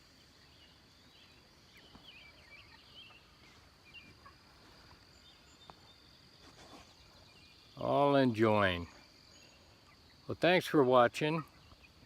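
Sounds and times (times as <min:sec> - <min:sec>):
chicks peeping: 0:00.3 - 0:08.2, 0:08.9 - 0:10.6.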